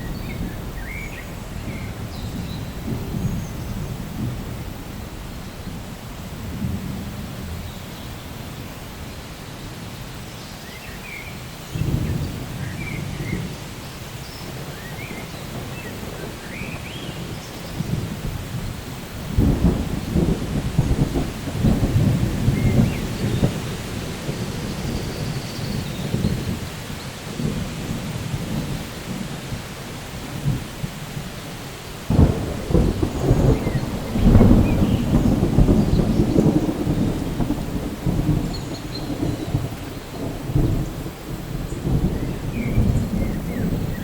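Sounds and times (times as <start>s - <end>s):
rolling thunder: 0.0s - 9.2s, 10.6s - 44.0s
steady rain: 0.0s - 44.0s
sharp thunder crack: 14.5s - 26.6s, 32.1s - 44.0s.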